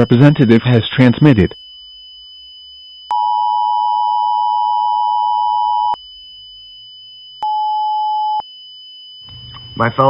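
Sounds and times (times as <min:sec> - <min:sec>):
single steady tone: 0:09.2 - 0:10.0.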